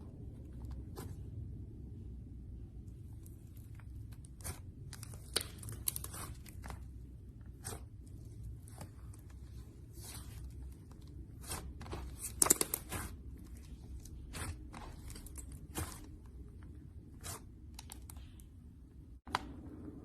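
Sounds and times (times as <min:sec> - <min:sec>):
slime crackling and popping: 0:03.6 - 0:06.9, 0:11.3 - 0:16.2.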